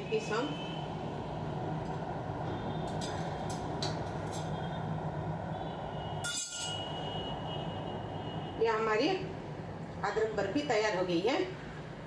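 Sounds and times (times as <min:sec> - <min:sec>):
utensil clinking on plate: 0:06.3 - 0:06.8.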